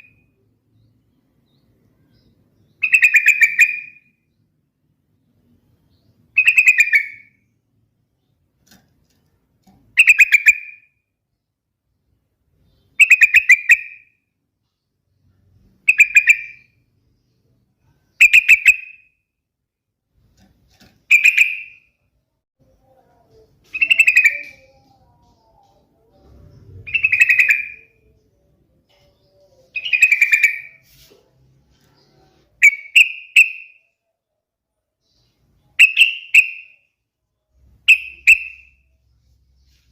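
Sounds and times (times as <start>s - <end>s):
bulbul singing whistled phrases: 2.1s - 4.2s, 6.3s - 7.5s, 9.9s - 10.9s, 12.7s - 14.2s, 15.8s - 16.8s, 17.8s - 19.2s, 21.1s - 21.9s, 23.6s - 30.9s, 32.6s - 34.0s, 35.0s - 37.0s, 37.8s - 39.0s.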